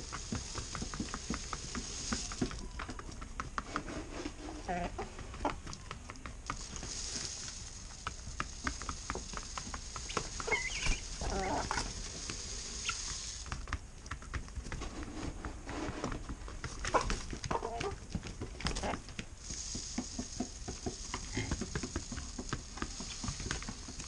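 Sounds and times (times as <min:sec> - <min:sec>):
chickens pecking at feed: 0:00.0 - 0:24.0
chicken clucks: 0:04.4 - 0:05.8, 0:10.0 - 0:11.9, 0:16.8 - 0:18.0.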